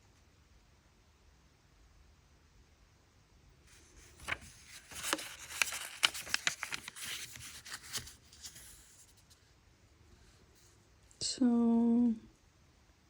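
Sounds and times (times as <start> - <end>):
packaging crinkling and rustling: 3.7 - 9.3.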